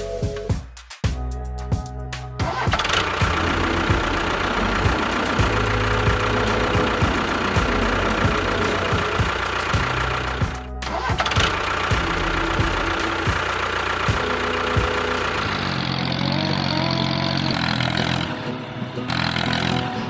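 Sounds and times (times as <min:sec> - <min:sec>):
music: 0:00.0 - 0:20.0
engine running with rough knocking: 0:02.6 - 0:18.3.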